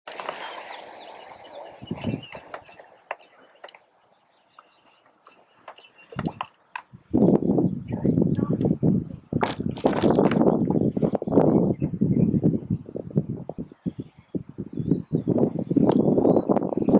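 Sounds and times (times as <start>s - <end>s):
bird chirps: 0.3s - 16.8s
sharp clicks and knocks: 4.6s - 6.9s.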